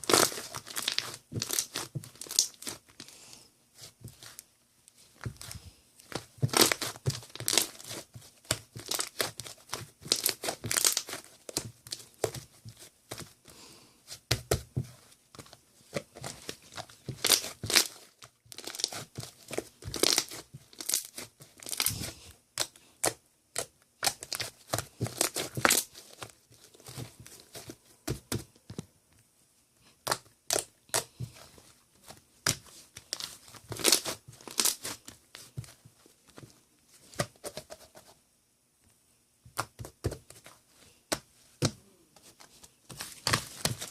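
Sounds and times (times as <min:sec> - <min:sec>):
crinkling and tearing: 0:00.0 - 0:03.1, 0:05.2 - 0:12.4, 0:15.9 - 0:22.7, 0:24.0 - 0:27.7, 0:32.0 - 0:35.7.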